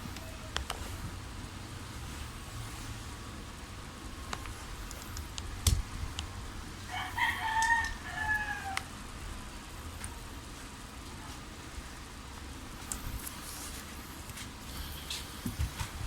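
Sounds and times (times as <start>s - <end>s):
rooster crowing: 6.8s - 9.0s.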